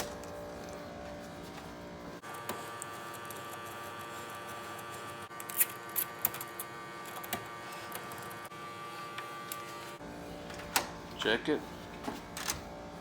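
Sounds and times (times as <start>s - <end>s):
steady background hum: 0.0s - 13.0s.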